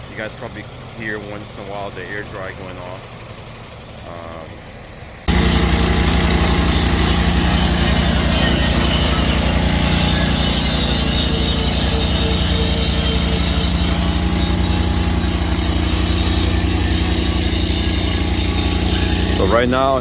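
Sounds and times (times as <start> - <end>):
engine running loudly: 5.2 - 20.0.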